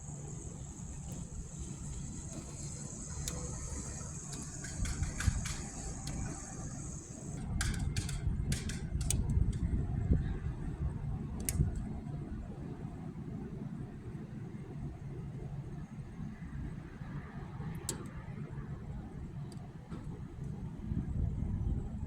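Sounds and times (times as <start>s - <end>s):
thin high hiss: 0.0s - 7.4s
wind buffeting microphone: 0.2s - 12.5s
sharp clicks: 0.5s - 9.6s.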